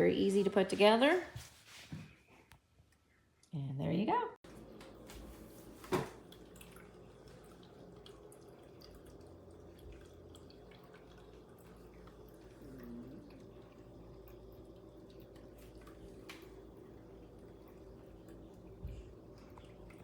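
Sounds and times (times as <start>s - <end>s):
low steady hum: 4.4s - 20.0s.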